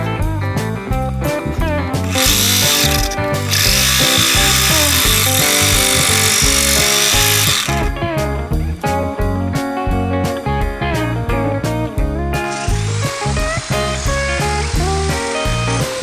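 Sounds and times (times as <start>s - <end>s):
power tool running: 1.5s - 8.0s.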